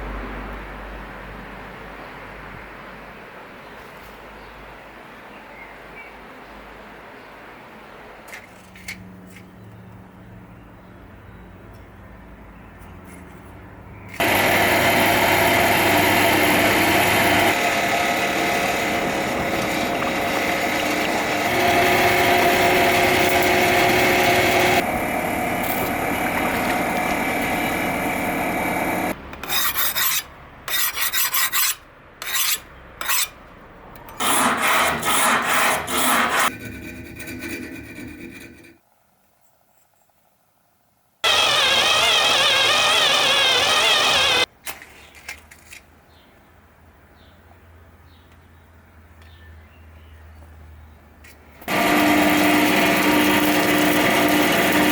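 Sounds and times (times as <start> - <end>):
knife blade grinding rasp: 29.4 - 33.4.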